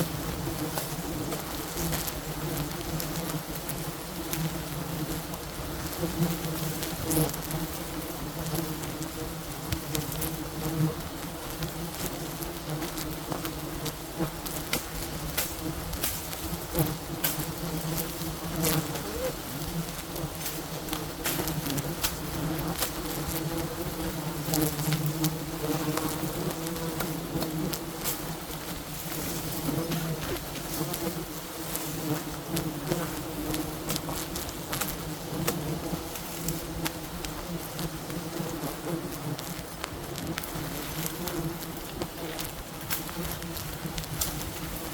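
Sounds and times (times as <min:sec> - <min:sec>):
bees buzzing: 0:00.0 - 0:44.9.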